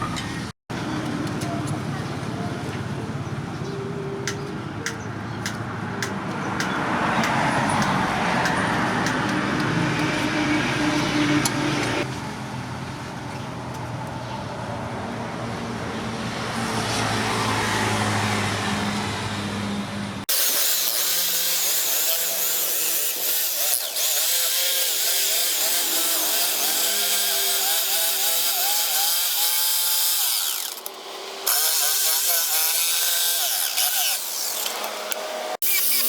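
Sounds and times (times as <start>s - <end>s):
electric grinder grinding steel: 20.3s - 36.0s.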